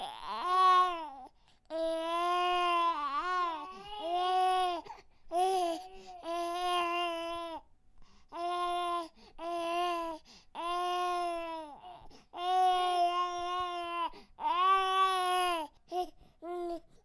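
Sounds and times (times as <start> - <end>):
baby crying: 2.0 - 7.5.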